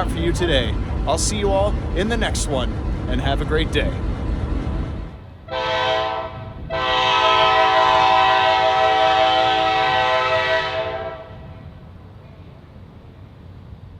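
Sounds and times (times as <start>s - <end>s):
locomotive air horn blasts: 5.5s - 11.6s.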